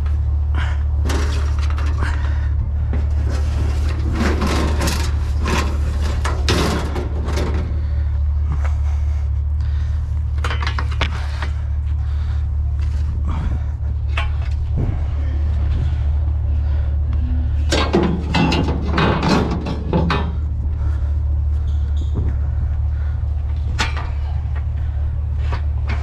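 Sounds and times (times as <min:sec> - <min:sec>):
steady low rumble: 0:00.0 - 0:26.0
scrap items clattering and scraping: 0:00.6 - 0:08.0, 0:17.7 - 0:20.9.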